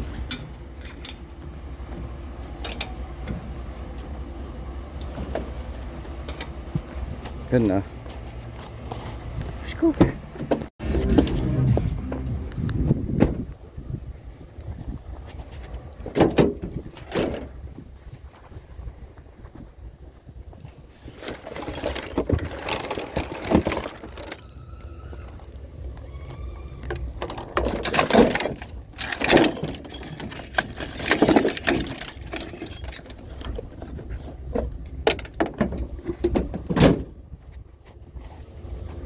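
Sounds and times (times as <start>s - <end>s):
scrap metal clattering and banging: 20.7s - 24.6s, 26.9s - 37.5s.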